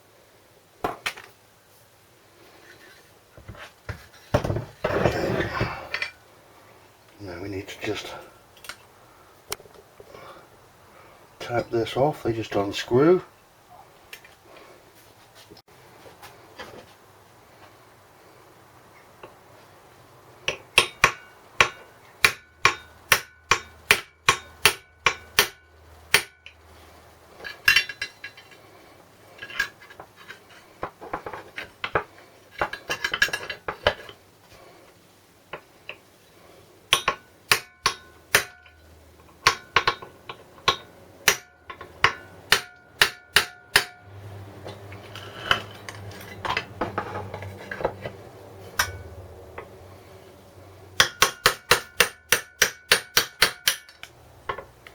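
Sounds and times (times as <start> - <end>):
hammer striking metal: 20.8 - 26.4, 36.9 - 38.8, 39.4 - 44.0, 48.8 - 49.7, 51.0 - 54.6.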